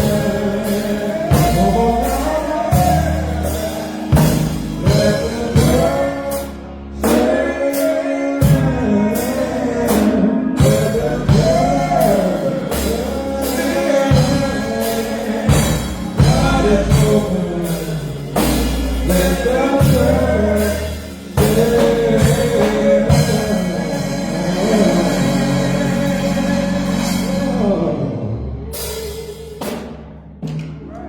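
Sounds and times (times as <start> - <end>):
person singing: 0.0 - 29.9
bass guitar: 0.0 - 31.0
drum kit: 0.0 - 31.0.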